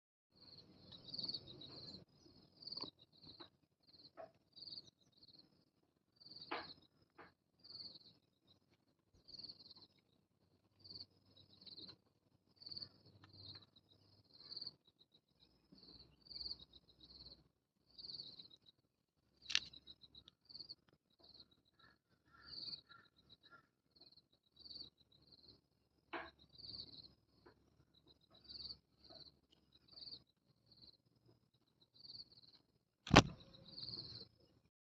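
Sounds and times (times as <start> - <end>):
sharp clicks: 19.4 - 21.0, 33.1 - 33.4.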